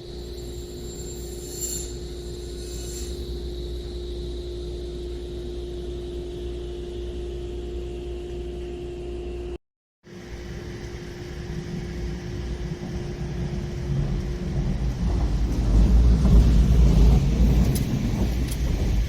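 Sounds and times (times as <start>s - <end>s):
train rumbling past: 0.0s - 8.2s, 10.1s - 19.0s
steady one-tone hum: 0.0s - 15.1s.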